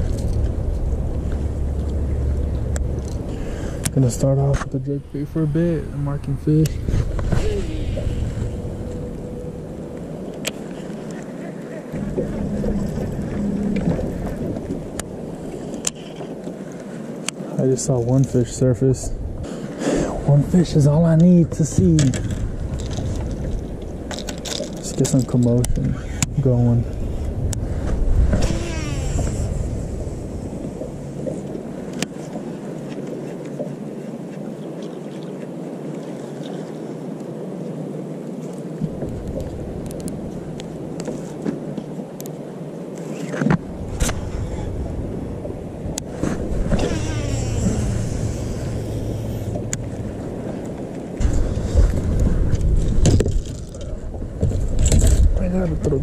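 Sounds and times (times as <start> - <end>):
wind rumble on microphone: 0.0 - 56.0
fishing line whirring off reel: 28.4 - 30.2, 46.7 - 49.6.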